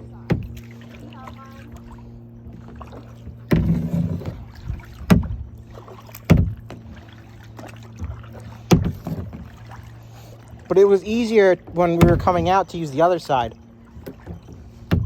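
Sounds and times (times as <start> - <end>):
paddle splashing in water: 0.0 - 15.0.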